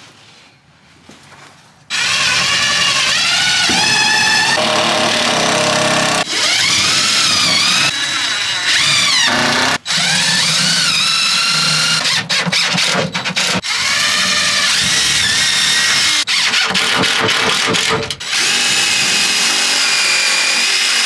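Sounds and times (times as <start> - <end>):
power drill whining: 1.9 - 21.0.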